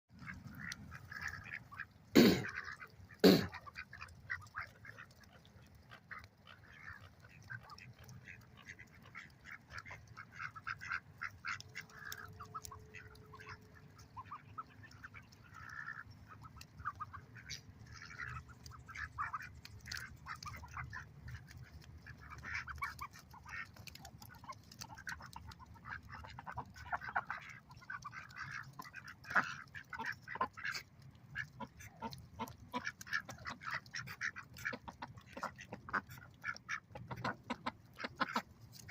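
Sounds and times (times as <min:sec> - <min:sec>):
ducks quacking: 0:00.1 - 0:38.9.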